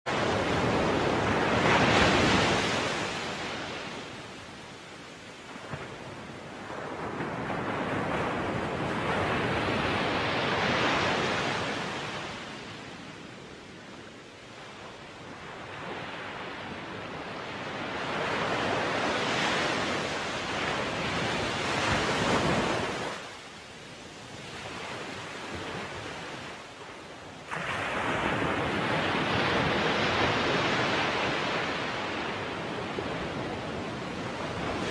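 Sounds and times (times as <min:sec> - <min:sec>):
wind: 0:00.0 - 0:34.9
heavy surf breaking: 0:00.1 - 0:12.8, 0:24.3 - 0:34.9.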